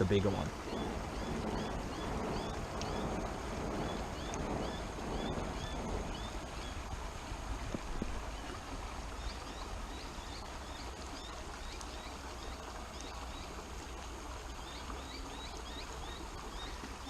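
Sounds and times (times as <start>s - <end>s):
creek flowing: 0.0s - 17.0s
wind rumble on microphone: 0.0s - 17.0s
high rising chirps: 0.6s - 6.8s.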